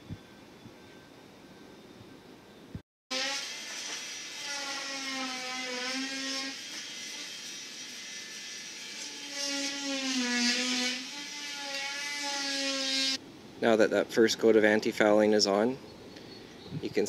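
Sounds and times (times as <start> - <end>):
hiss: 3.3 - 4.7.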